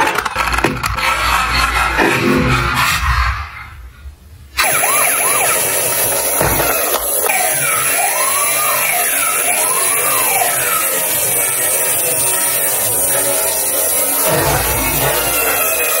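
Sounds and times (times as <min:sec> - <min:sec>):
toy siren yelping and wailing: 0:04.6 - 0:16.0.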